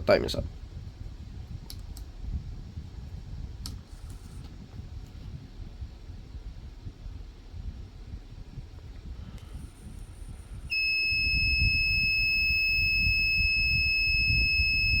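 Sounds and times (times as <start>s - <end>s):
high-pitched electronic buzzer: 10.7s - 15.0s.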